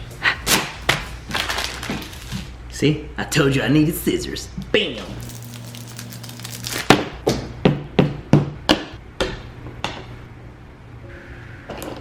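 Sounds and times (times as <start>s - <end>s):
low steady hum: 4.4s - 7.2s.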